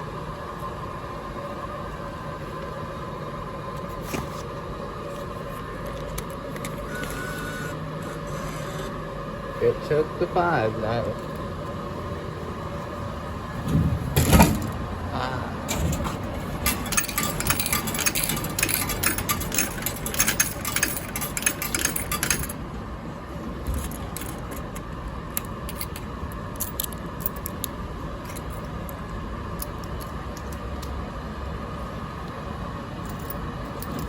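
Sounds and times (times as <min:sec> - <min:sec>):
coins clattering into tray: 0:15.7 - 0:22.6, 0:23.7 - 0:24.8.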